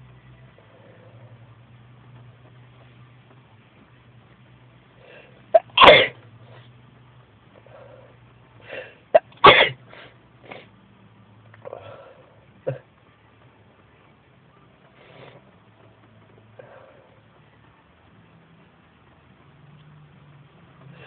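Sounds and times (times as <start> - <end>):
man sneezing: 5.6 - 6.1, 9.2 - 9.8.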